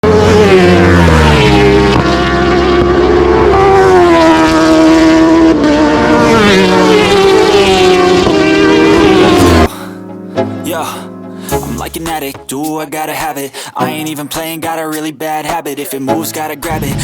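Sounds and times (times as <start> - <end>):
racing motorcycle engine accelerating: 0.0 - 9.7.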